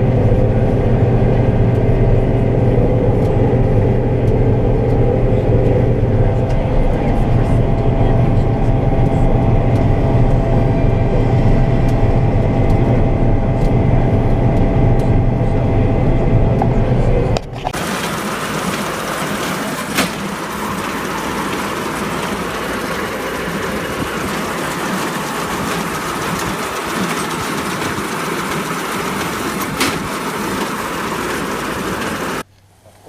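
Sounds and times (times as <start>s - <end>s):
heavy farm machinery running: 0.0s - 32.5s.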